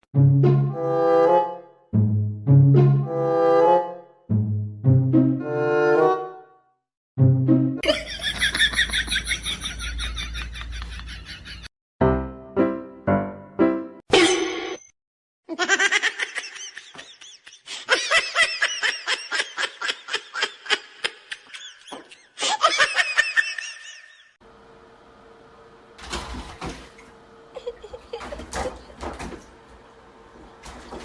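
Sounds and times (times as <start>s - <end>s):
high-pitched laughter: 7.8s - 11.7s, 15.5s - 24.3s, 27.6s - 28.5s.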